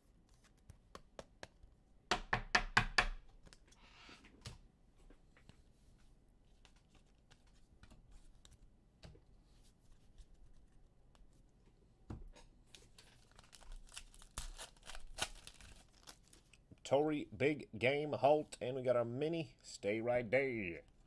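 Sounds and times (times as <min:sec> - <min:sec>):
trading cards rustling: 0:12.7 - 0:16.5.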